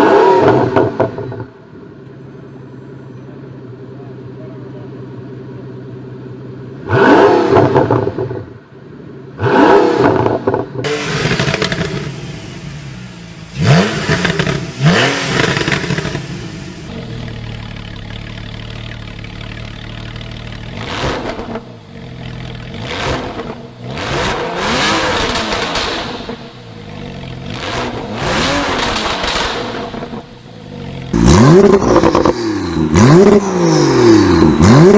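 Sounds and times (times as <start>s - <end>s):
car engine revving: 0.0s - 1.6s, 5.7s - 34.9s
exhaust crackles and pops: 10.0s - 34.9s.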